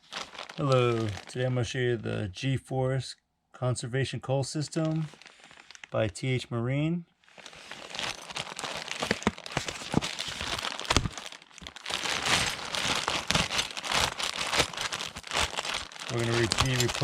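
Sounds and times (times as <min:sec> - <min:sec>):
plastic crinkling: 0:00.0 - 0:01.4, 0:04.8 - 0:06.0, 0:07.2 - 0:17.0.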